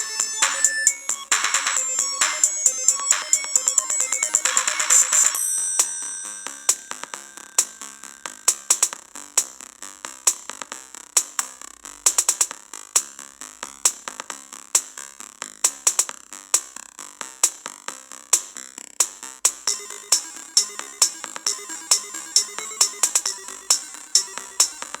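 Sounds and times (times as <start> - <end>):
electronic music on phone speaker: 0.0 - 9.0, 19.6 - 25.0.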